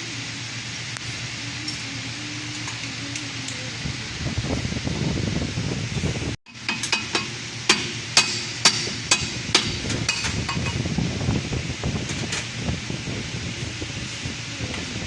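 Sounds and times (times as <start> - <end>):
steady fan hum: 0.0 - 15.0
hand tools clicking on metal: 6.5 - 10.8.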